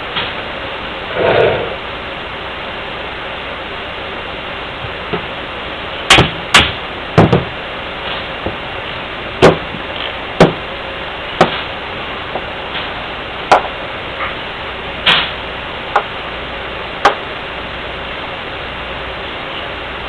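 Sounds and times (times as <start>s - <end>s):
steady hiss: 0.0s - 20.0s.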